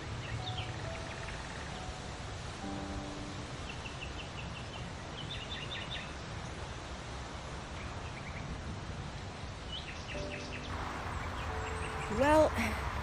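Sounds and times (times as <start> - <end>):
songbirds chirping: 9.7 - 13.0
outdoor hiss: 10.7 - 13.0.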